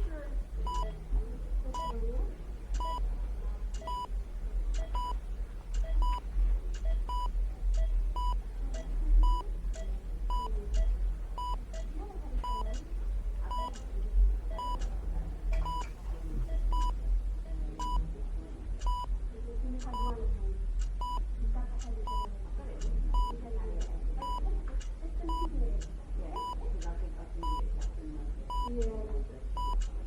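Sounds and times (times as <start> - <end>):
heart monitor beeping: 0.0 - 17.1, 17.8 - 18.0, 18.8 - 19.1, 19.8 - 20.2, 20.8 - 21.3, 22.1 - 22.3, 23.2 - 23.4, 24.2 - 24.4, 25.3 - 25.5, 26.4 - 26.6, 27.4 - 27.7, 28.5 - 28.8, 29.6 - 30.0
faint room murmur: 0.0 - 30.0
steady low hum: 0.0 - 30.0.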